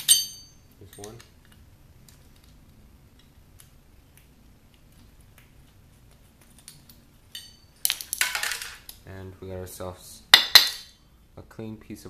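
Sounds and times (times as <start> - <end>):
small metallic clink: 0.0 - 1.2, 7.3 - 8.0.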